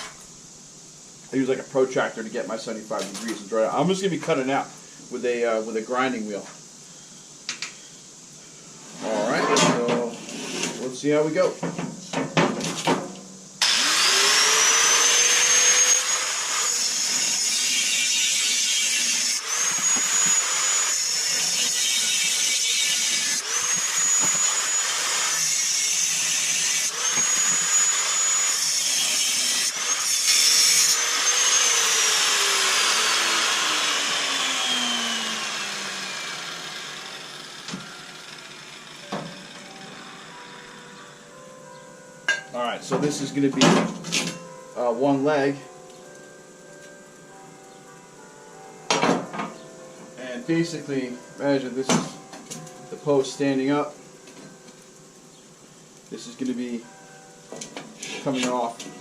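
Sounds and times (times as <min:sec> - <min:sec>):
angle grinder cutting steel: 0:13.6 - 0:41.2
grinder winding down: 0:13.6 - 0:41.2.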